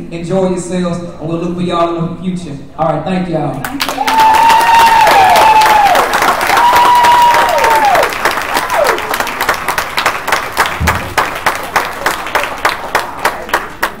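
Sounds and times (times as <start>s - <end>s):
audience applauding: 3.6s - 14.0s.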